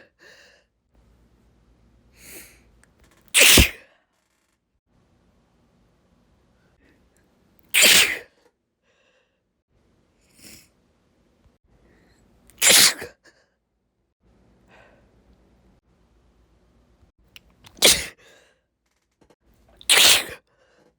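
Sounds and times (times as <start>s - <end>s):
woman sneezing: 3.4s - 3.8s, 7.8s - 8.3s, 12.6s - 13.2s, 17.7s - 18.2s, 19.9s - 20.4s
soft breathing: 8.8s - 9.5s.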